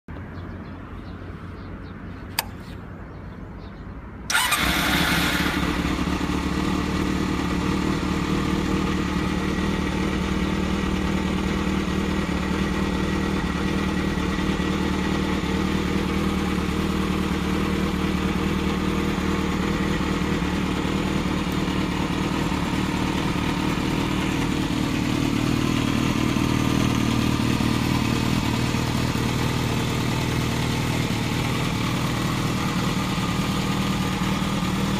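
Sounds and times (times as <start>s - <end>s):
starter click: 2.3s - 2.6s
motorcycle engine idling: 4.3s - 34.9s.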